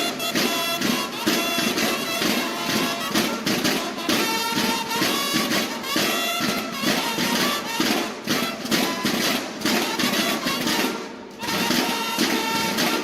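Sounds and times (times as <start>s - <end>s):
drums beating march rhythm: 0.0s - 13.0s.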